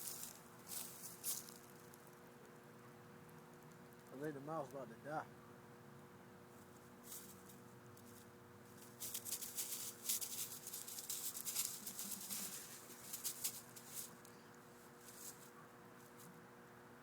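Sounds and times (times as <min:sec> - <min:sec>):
faint steady hum: 0:00.0 - 0:17.0
puppy scratching and scrabbling: 0:08.8 - 0:14.3.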